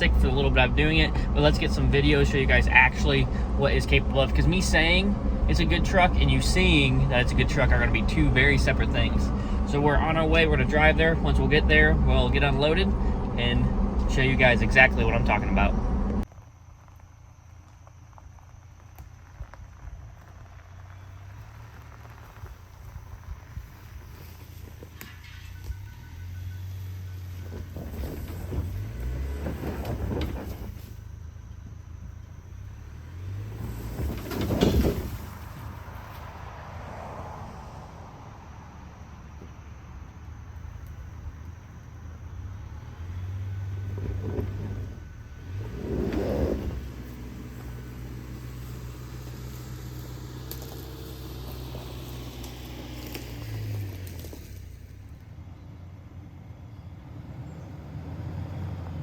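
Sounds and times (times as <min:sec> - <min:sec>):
truck engine running: 0:00.0 - 0:16.4
pickup engine hum: 0:00.0 - 0:59.0
tyre and road noise: 0:00.0 - 0:59.0.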